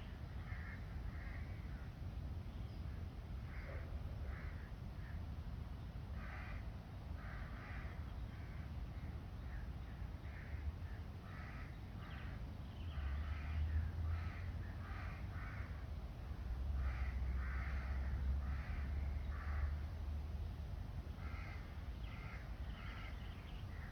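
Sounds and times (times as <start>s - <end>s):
harsh crow-like bird calls: 0.3s - 2.0s, 3.4s - 5.2s, 6.1s - 16.0s, 16.7s - 20.0s, 21.2s - 23.9s
steady low rumble: 12.7s - 23.9s.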